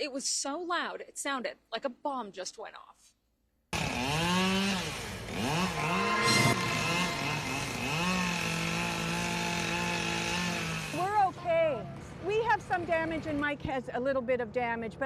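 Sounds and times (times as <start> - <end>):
chainsaw revving: 3.8 - 11.1
brief burst of noise: 5.7 - 8.2.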